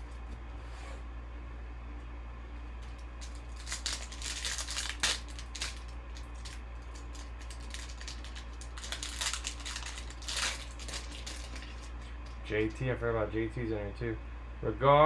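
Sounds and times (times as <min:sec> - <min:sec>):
steady low hum: 0:00.0 - 0:15.0
plastic and foil crinkling: 0:02.8 - 0:12.4.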